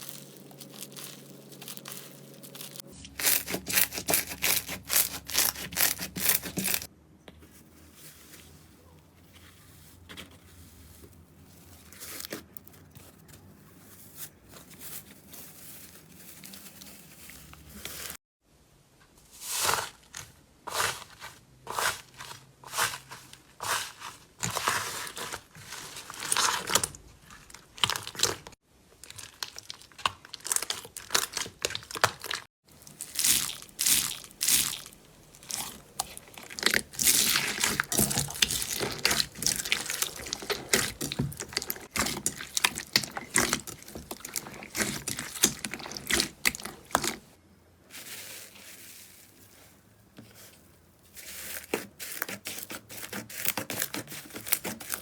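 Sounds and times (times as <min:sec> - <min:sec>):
slime crackling and squishing: 0:00.0 - 0:06.9, 0:23.7 - 0:55.0.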